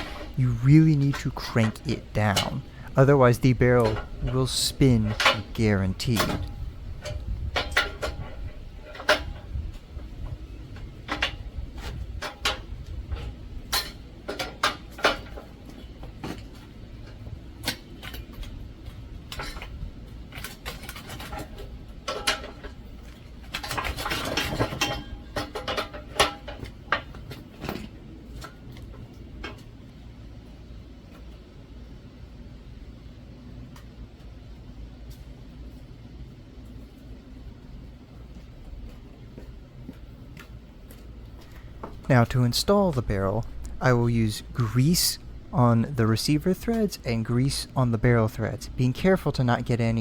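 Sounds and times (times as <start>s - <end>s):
hand tools clinking on metal vise: 3.6s - 9.4s.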